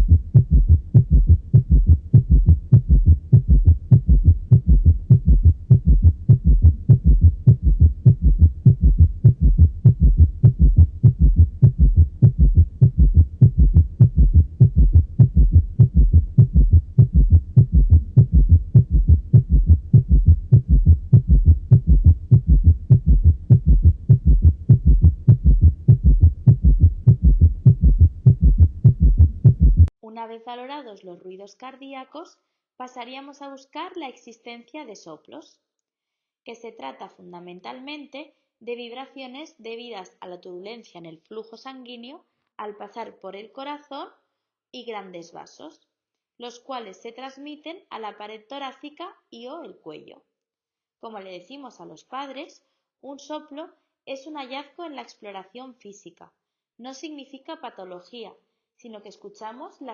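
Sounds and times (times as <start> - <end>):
heartbeat thuds: 0.0 - 29.9.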